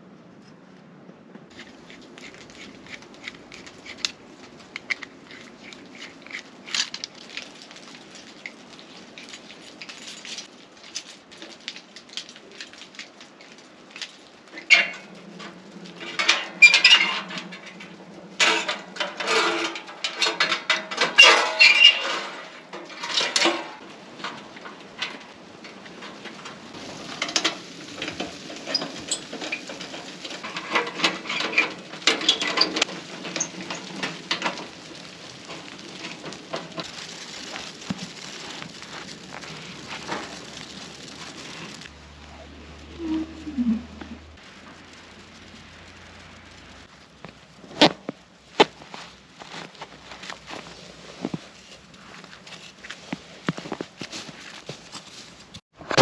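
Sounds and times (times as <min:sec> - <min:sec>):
cookware and utensils clattering: 0:18.4 - 0:25.2.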